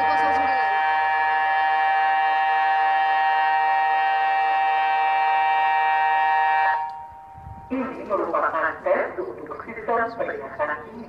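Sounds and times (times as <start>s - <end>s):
warning siren steady tone: 0.0s - 8.8s.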